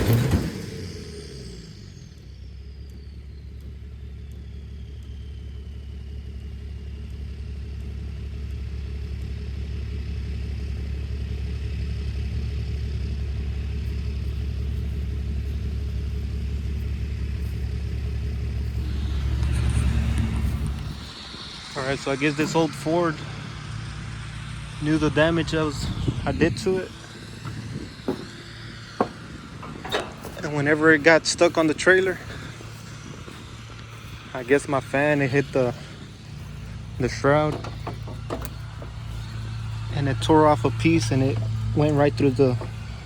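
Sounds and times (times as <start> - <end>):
truck engine running: 0.0 - 43.0
high whine falling in pitch: 14.3 - 43.0.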